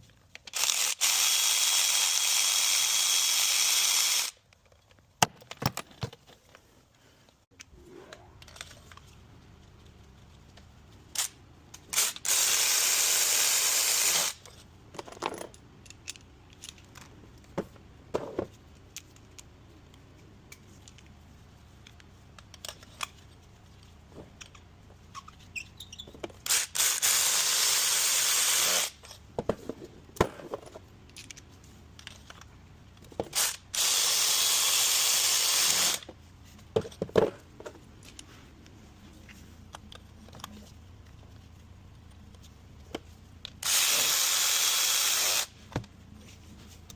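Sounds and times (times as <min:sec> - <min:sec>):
tools clicking and knocking: 0:14.4 - 0:21.1.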